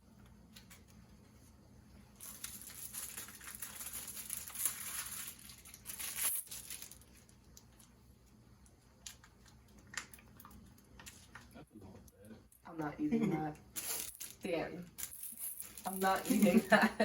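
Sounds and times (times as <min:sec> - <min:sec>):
plastic and foil packaging crinkling: 0:02.2 - 0:08.0, 0:13.8 - 0:16.8.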